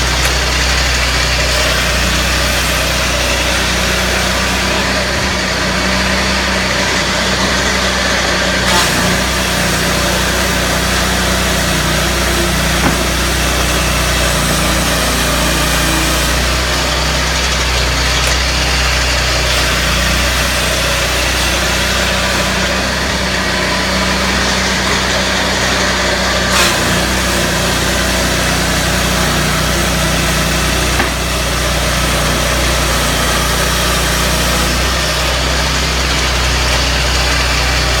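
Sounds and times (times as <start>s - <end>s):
rushing noise of saw: 0.0s - 38.0s
sawmill engine running: 0.0s - 38.0s
knocks: 12.7s - 13.4s.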